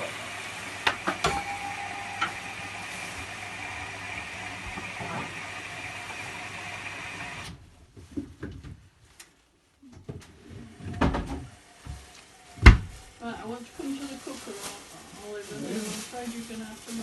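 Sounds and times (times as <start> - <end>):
appliance hissing and whirring: 0.0 - 7.6.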